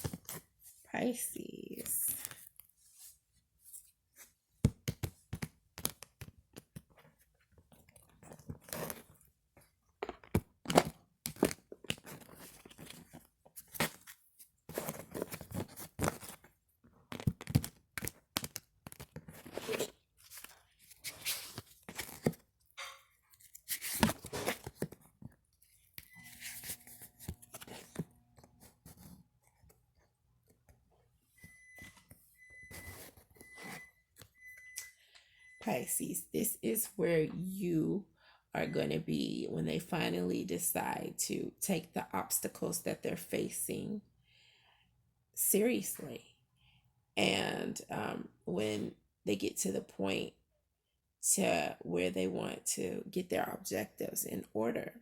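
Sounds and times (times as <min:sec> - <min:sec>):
cards being shuffled: 0:25.9 - 0:29.2.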